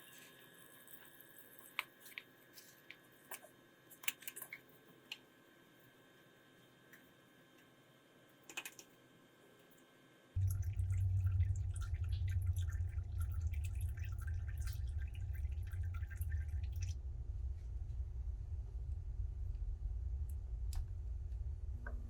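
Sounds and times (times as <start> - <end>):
oil dripping and splattering: 10.4 - 17.0
low rumble: 10.4 - 22.0.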